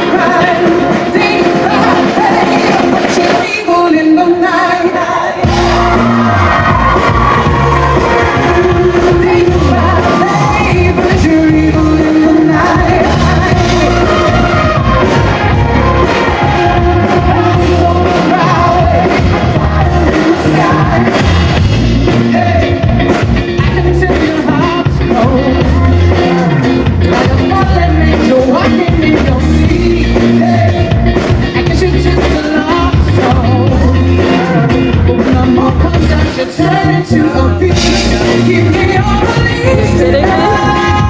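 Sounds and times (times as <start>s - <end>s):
live pop-rock band playing: 0.0s - 41.0s
person singing: 0.0s - 41.0s.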